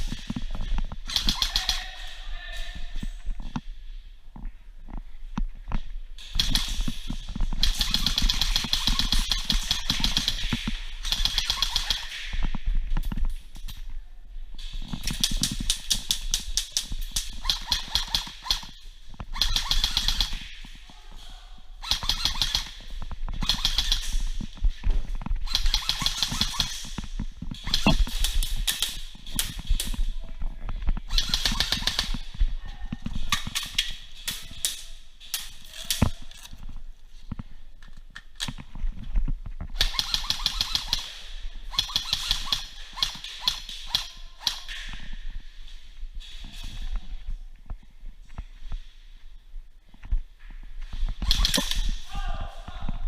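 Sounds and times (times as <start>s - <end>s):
airsoft guns firing bursts: 1.0s - 2.1s, 6.3s - 12.4s, 15.0s - 20.7s, 21.8s - 24.5s, 25.4s - 30.0s, 31.1s - 32.4s, 39.8s - 44.7s, 51.2s - 52.1s.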